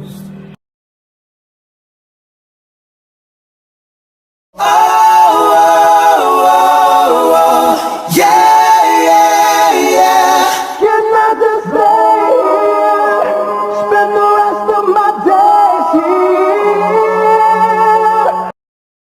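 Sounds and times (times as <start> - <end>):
a cappella group singing: 4.6 - 18.5.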